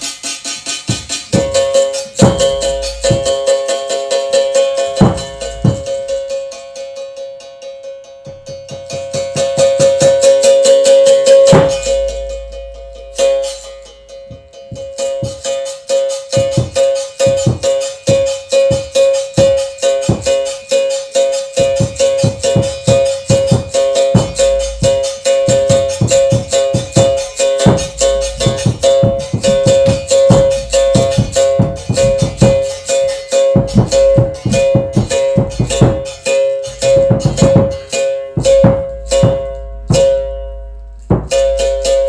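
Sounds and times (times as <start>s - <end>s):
struck rattling string notes: 0.0s - 42.0s
steady held tone: 1.4s - 6.7s, 9.4s - 42.0s
low bass: 11.6s - 14.3s, 27.2s - 37.4s, 38.4s - 42.0s.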